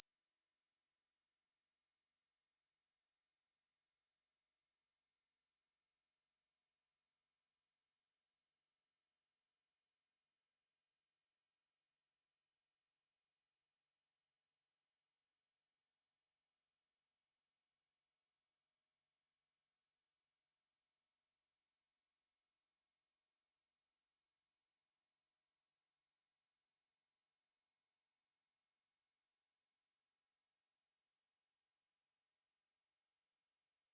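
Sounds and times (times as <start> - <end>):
high-pitched sine-wave test tone: 0.0 - 4.3, 12.0 - 33.9.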